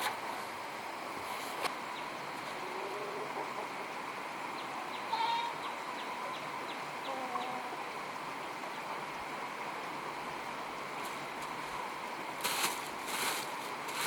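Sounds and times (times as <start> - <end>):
outdoor ambience: 0.0 - 14.0
farmyard animal calls: 2.0 - 3.9, 4.6 - 7.9.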